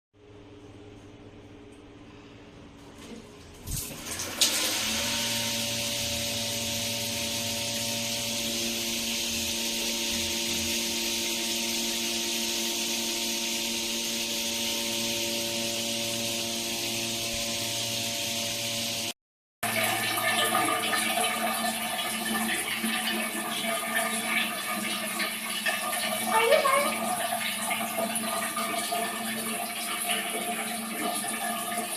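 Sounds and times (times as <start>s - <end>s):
booster pump whine: 2.9s - 24.9s
shower head spraying water: 3.7s - 19.1s.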